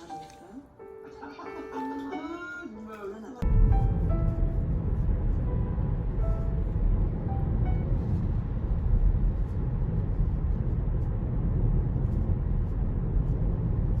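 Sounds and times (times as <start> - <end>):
vehicle road and engine rumble: 3.4 - 14.0.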